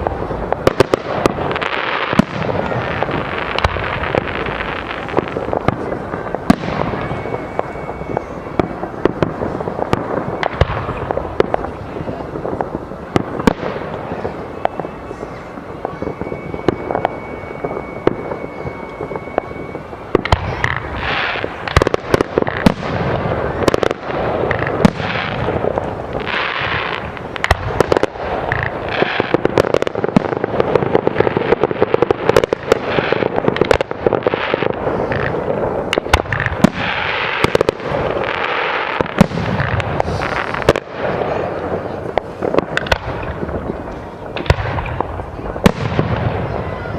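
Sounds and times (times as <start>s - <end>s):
fireworks bangs and crackling: 0.0s - 46.9s.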